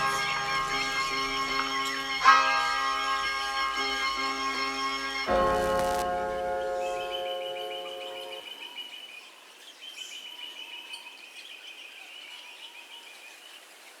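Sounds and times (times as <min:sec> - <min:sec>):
background music: 0:00.0 - 0:08.5
faint high-pitched trilling chirp: 0:05.7 - 0:13.3.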